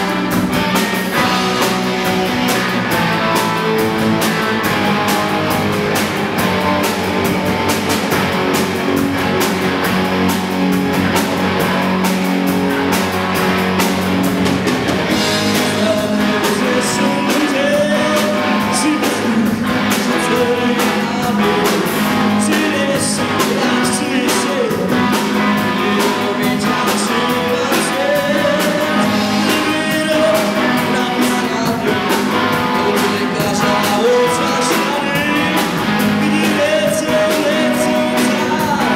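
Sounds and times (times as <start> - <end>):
rock band with guitars: 0.0 - 38.9
person singing: 15.4 - 38.9.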